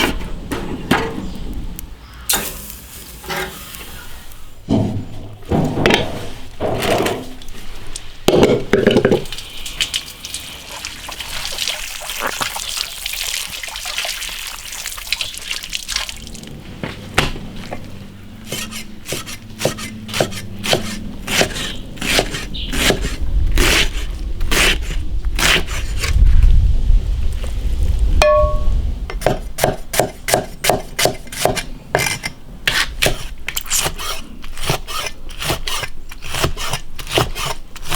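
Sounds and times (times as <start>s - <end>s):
water splashing and dripping: 9.0s - 16.6s
low rumble: 26.0s - 29.2s.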